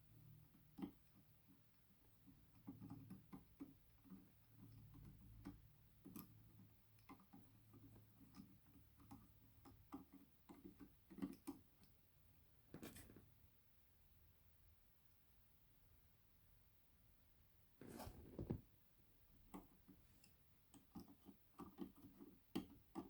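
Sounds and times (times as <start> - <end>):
hands clicking and tapping parts: 0.5 - 12.0, 19.4 - 23.0.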